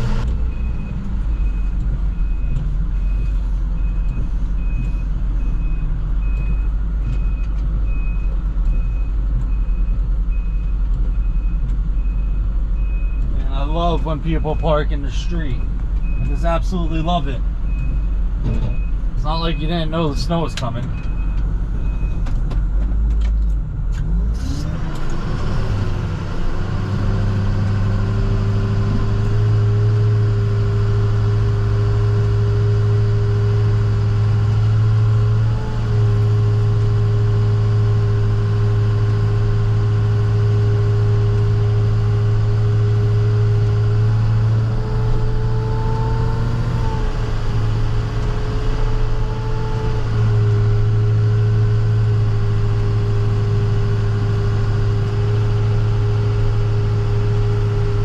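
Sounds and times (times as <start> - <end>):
truck engine from inside cab: 0.0 - 58.0.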